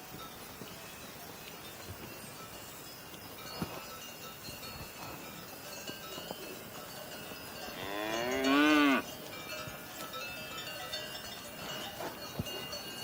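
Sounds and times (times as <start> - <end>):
cow mooing: 7.8 - 9.0.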